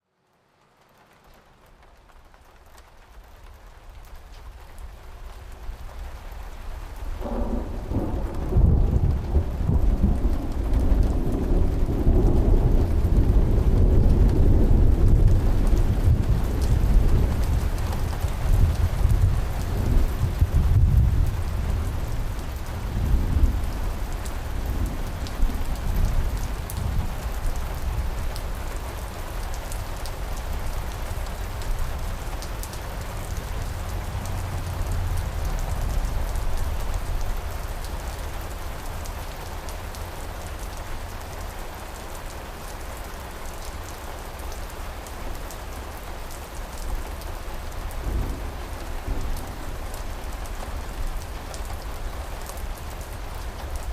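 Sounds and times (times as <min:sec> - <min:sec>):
steady rain hiss: 0:00.0 - 0:53.9
low thunder rumble: 0:07.0 - 0:39.2, 0:47.7 - 0:53.9.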